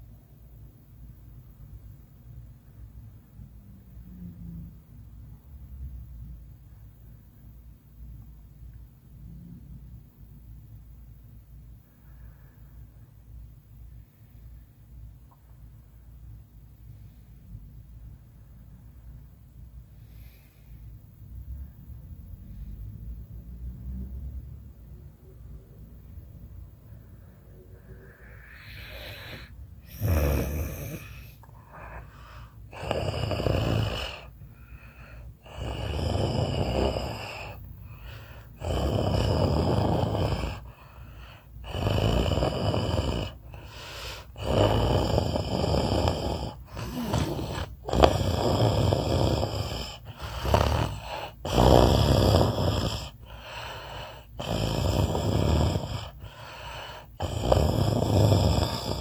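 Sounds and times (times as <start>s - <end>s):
rasping snoring: 27.7s - 59.0s.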